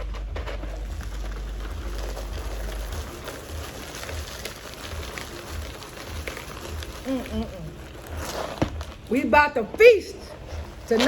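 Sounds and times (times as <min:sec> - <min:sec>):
cereal pouring into bowl: 0:00.5 - 0:09.1.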